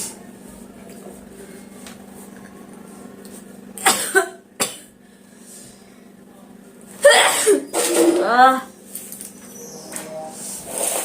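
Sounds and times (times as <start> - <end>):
woman sneezing: 7.0 - 7.7.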